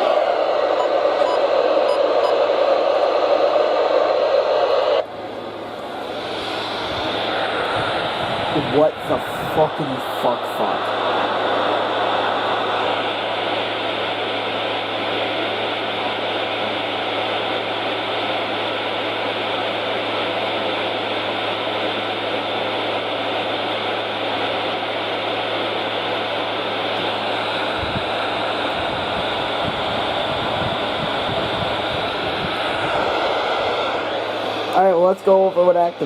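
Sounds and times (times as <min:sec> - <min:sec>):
radio static hiss: 0:00.0 - 0:05.1, 0:05.8 - 0:14.0
low hum: 0:00.0 - 0:23.2, 0:24.0 - 0:36.0.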